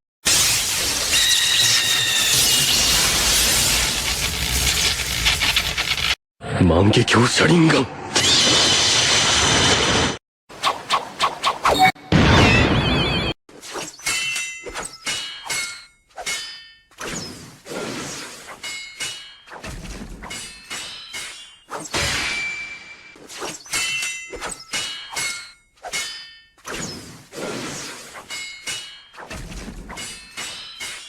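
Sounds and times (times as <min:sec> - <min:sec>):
sword swishes: 0:13.5 - 0:31.0
metal blade strikes ringing: 0:14.0 - 0:16.9, 0:20.2 - 0:26.6, 0:28.2 - 0:31.0.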